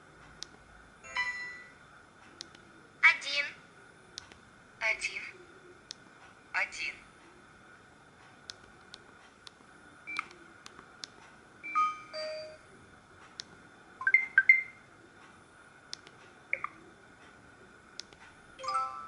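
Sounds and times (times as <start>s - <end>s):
faint clicks: 2.2s - 2.7s, 4.2s - 4.4s, 15.2s - 18.4s
phone alert beeps and chirps: 14.0s - 14.8s.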